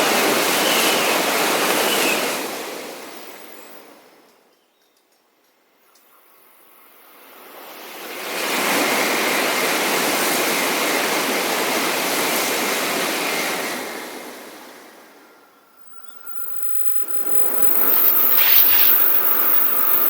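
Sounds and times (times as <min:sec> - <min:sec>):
high-speed train passing: 0:05.9 - 0:20.0
faint high whine: 0:15.0 - 0:20.0.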